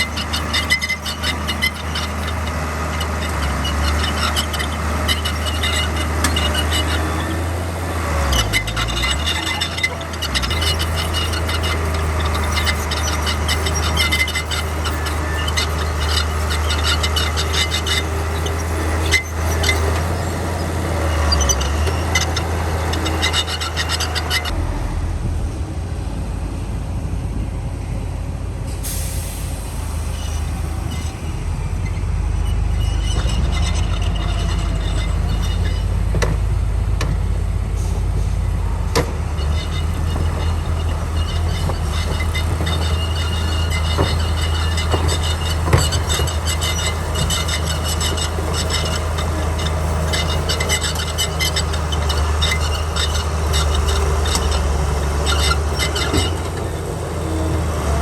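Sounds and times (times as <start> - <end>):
bulldozer engine running: 0.0 - 58.0
rapid metallic clatter: 33.1 - 56.8.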